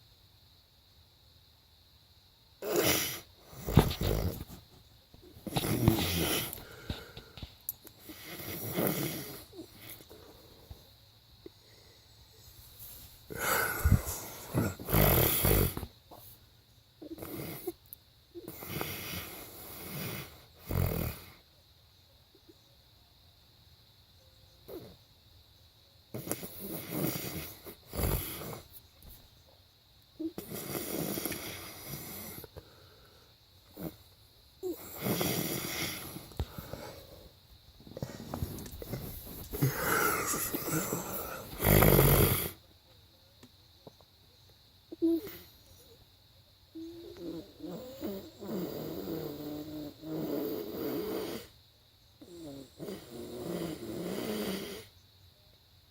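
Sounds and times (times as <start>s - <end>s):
man snoring: 2.6s - 4.6s, 5.4s - 7.4s, 8.0s - 10.2s, 13.3s - 15.9s, 18.4s - 21.4s, 26.1s - 28.6s, 30.3s - 32.5s, 34.6s - 37.2s, 37.9s - 42.6s, 46.8s - 51.5s, 52.2s - 54.9s
quiet breathing: 2.6s - 17.8s, 30.3s - 42.6s.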